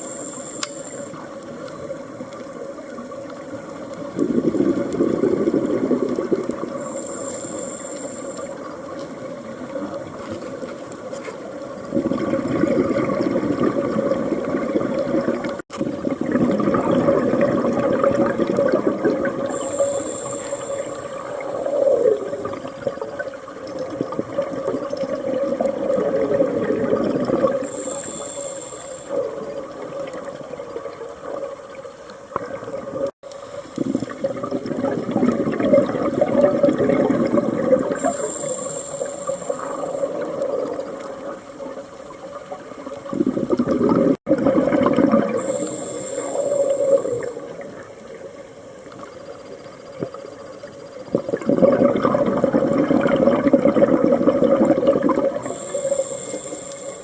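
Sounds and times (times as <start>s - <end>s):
exhaled bubbles rushing: 4.1s - 6.9s, 11.8s - 28.4s, 33.8s - 48.1s, 51.0s - 57.0s
regulator hissing inhale: 6.8s - 8.6s, 19.5s - 22.2s, 27.6s - 29.4s, 38.0s - 40.2s, 45.3s - 47.4s, 55.4s - 57.0s.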